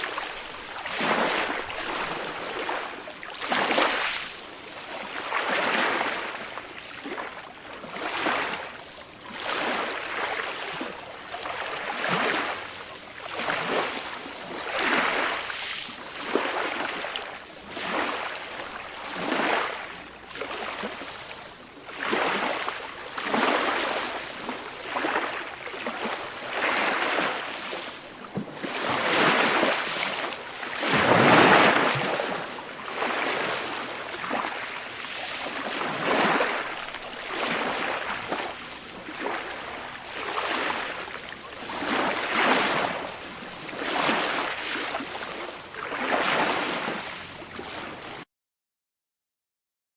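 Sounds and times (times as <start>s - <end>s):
small waves lapping and splashing: 0.0s - 48.2s.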